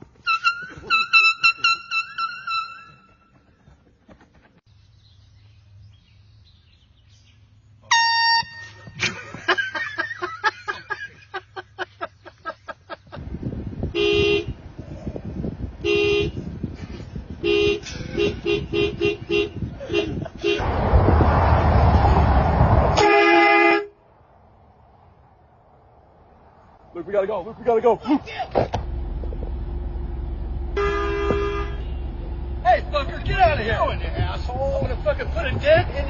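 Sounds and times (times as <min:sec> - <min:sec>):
engine and road noise: 0:00.0 - 0:36.0
air horn blast: 0:00.2 - 0:03.2, 0:07.9 - 0:08.9, 0:14.0 - 0:14.6, 0:15.8 - 0:16.5, 0:17.4 - 0:20.7, 0:23.0 - 0:24.0, 0:30.7 - 0:32.9
car horn beeps: 0:00.2 - 0:03.3, 0:07.9 - 0:09.0, 0:13.9 - 0:14.6, 0:15.8 - 0:16.5, 0:17.4 - 0:20.6, 0:23.0 - 0:24.0, 0:30.6 - 0:32.6
loud rushing noise: 0:20.6 - 0:23.1.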